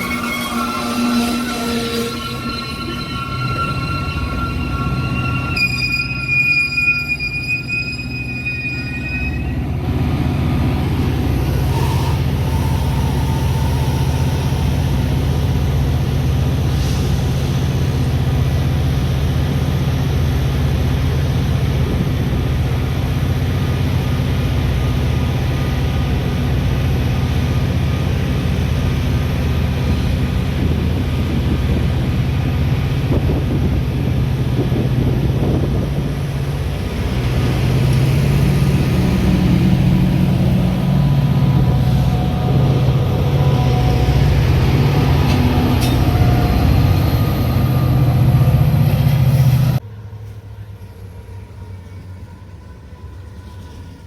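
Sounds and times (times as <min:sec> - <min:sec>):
train wheels squealing: 0:00.0 - 0:09.8, 0:11.7 - 0:15.8, 0:40.7 - 0:49.5
train rumbling along rails: 0:00.0 - 0:54.0.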